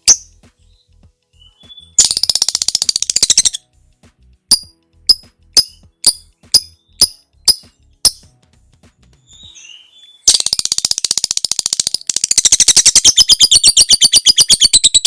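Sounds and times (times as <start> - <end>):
sharp high-pitched bird chips: 0.0 - 3.7, 4.5 - 8.3, 9.2 - 15.0
lovebird rapid chattering trill: 1.9 - 3.6, 4.5 - 8.2, 10.2 - 15.0.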